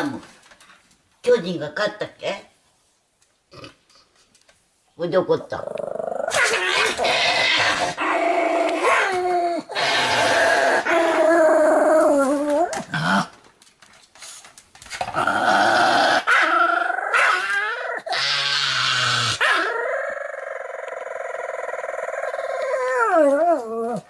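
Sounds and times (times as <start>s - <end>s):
dog growling and yowling: 5.6s - 13.4s, 15.0s - 24.0s.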